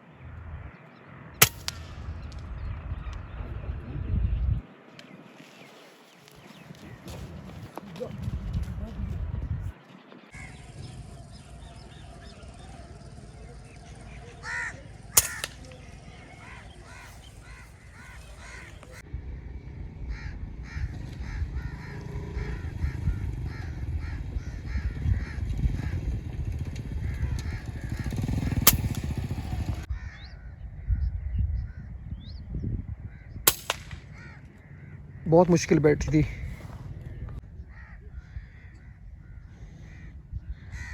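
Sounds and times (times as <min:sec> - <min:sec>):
air rifle shots: 0:01.4 - 0:02.5, 0:15.1 - 0:16.1, 0:28.6 - 0:29.3, 0:33.5 - 0:34.4
crows cawing: 0:10.3 - 0:19.1, 0:20.1 - 0:26.1, 0:26.8 - 0:30.6, 0:33.1 - 0:40.9.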